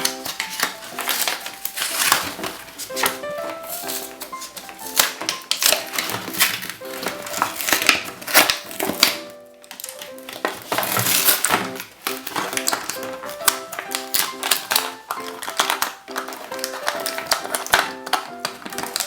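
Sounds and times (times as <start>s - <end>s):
light classical music: 0.0s - 19.0s
packaging crinkling and crunching: 0.0s - 19.0s.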